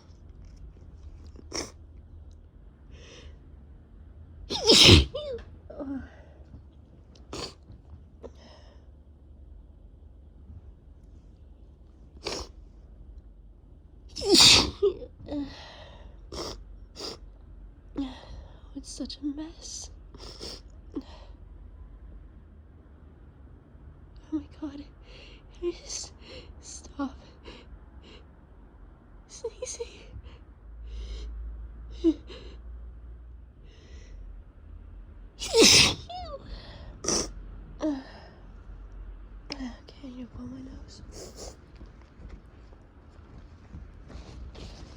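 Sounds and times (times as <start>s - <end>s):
person sneezing: 1.5s - 1.7s, 4.5s - 5.4s, 7.3s - 7.6s, 12.2s - 12.5s, 14.2s - 14.8s, 16.4s - 17.2s, 35.4s - 36.1s, 37.0s - 37.3s
faint breathy sounds: 36.1s - 38.7s.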